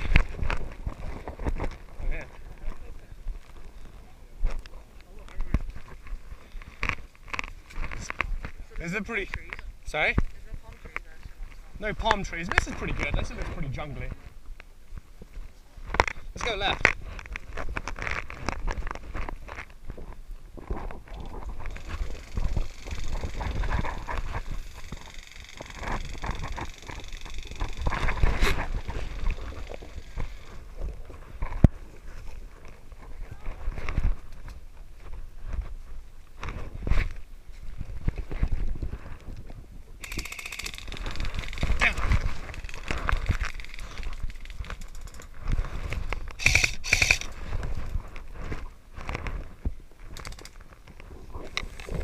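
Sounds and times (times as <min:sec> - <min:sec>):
footsteps in dry undergrowth: 0:00.0 - 0:04.7, 0:12.8 - 0:27.0
rapid clicking bursts: 0:40.0 - 0:45.2, 0:46.4 - 0:47.4.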